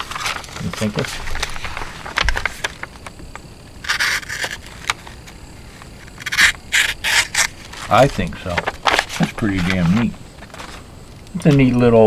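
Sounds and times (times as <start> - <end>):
knife scraping: 3.9 - 4.8, 6.1 - 7.9.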